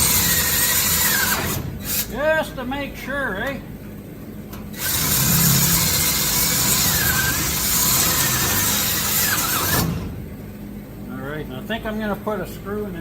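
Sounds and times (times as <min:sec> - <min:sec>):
welder sizzling: 0:04.8 - 0:09.9.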